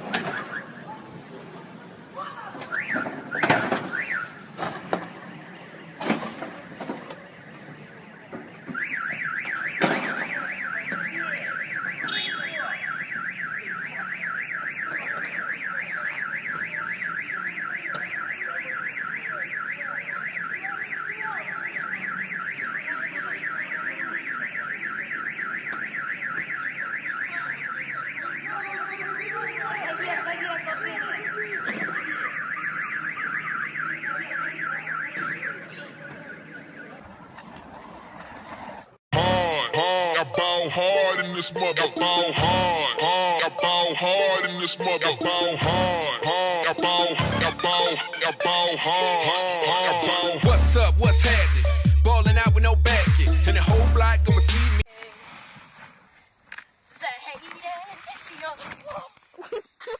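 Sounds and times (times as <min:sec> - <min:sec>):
car alarm warbling wail: 0:31.0 - 0:35.6, 0:36.9 - 0:54.8.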